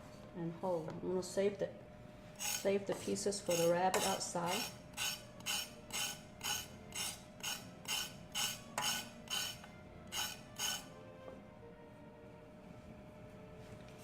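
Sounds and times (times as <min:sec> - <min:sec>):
knife cutting vegetable on board: 0:02.5 - 0:05.2.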